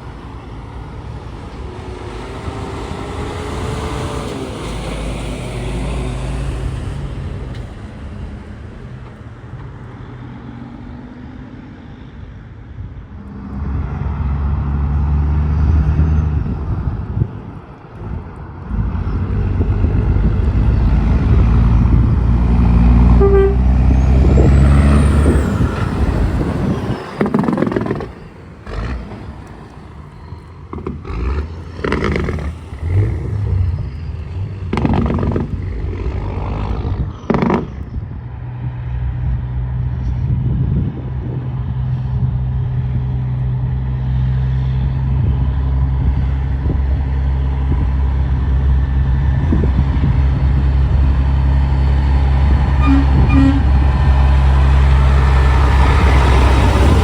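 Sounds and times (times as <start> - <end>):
heavy engine low drone: 0.0 - 57.0
road traffic: 0.0 - 57.0
short clatters: 34.5 - 37.8.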